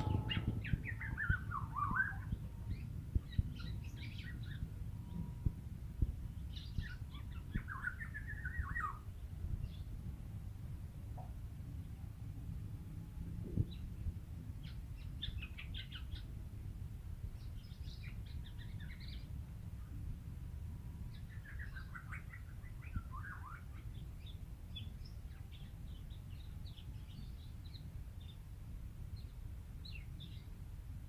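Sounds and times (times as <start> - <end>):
bird chirping calls: 0.0 - 5.5, 6.4 - 9.9, 21.1 - 28.3
low background rumble: 0.0 - 31.0.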